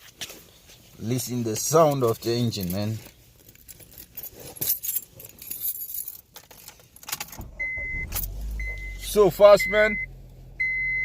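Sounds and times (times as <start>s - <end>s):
keys jangling and clicking: 1.9s - 7.5s
car engine starting and idling: 7.1s - 11.0s
dashboard chime beeping: 7.6s - 11.0s.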